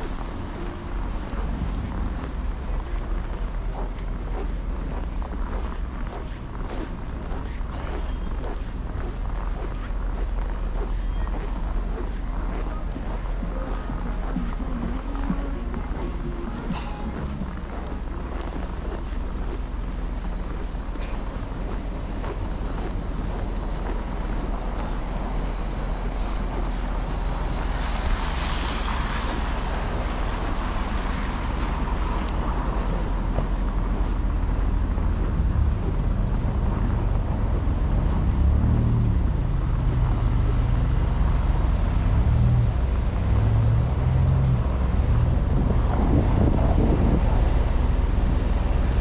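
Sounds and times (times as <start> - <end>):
wind buffeting microphone: 0.0 - 13.5, 39.2 - 49.0
city street traffic: 0.0 - 49.0
vehicle passing with hiss: 26.1 - 33.2.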